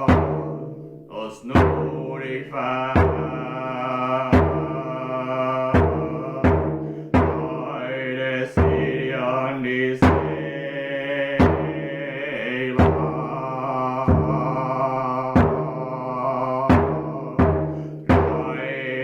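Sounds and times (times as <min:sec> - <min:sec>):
hand drum beating slowly: 0:00.0 - 0:02.0, 0:05.7 - 0:07.7, 0:12.8 - 0:13.3, 0:16.7 - 0:18.6
person chanting: 0:00.0 - 0:19.0.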